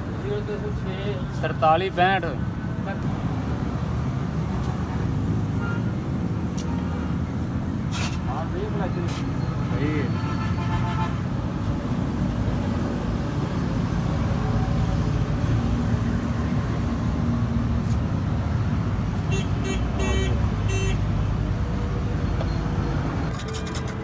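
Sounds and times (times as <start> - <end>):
vehicle horn beeping: 5.6 - 6.0, 9.6 - 11.3, 19.3 - 21.1
motor vehicle rumble: 11.4 - 24.0.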